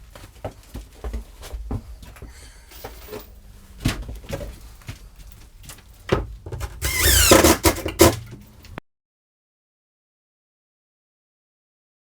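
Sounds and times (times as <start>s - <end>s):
sharp knocks and clicks: 6.1s - 8.8s
loud rasping noise: 6.8s - 8.4s.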